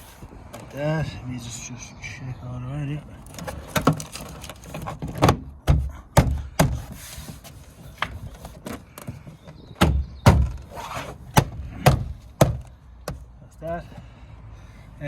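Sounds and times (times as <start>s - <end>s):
hand thumping car door panel: 5.1s - 7.0s, 9.7s - 10.7s, 11.3s - 13.2s.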